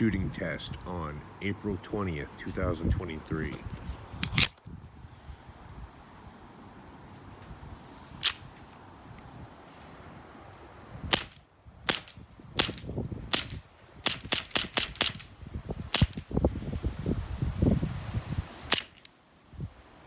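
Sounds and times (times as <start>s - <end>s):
airsoft pistol shots: 8.2s - 8.5s, 11.1s - 15.3s, 15.9s - 16.2s, 18.7s - 19.1s.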